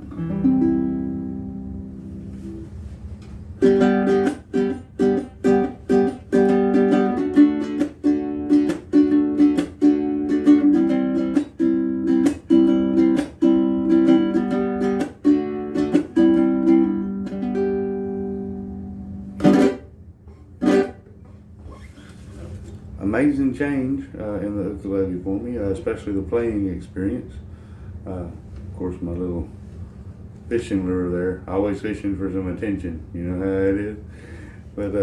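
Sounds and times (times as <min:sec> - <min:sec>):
ukulele chords strummed: 0:00.0 - 0:02.9, 0:03.5 - 0:20.0, 0:20.6 - 0:21.0.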